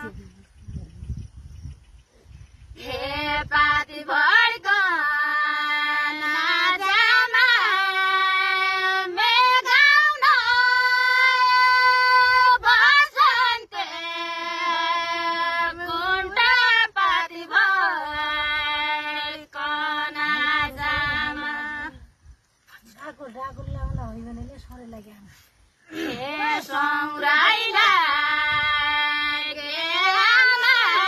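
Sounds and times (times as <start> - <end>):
high solo voice singing: 20.1 - 22.0.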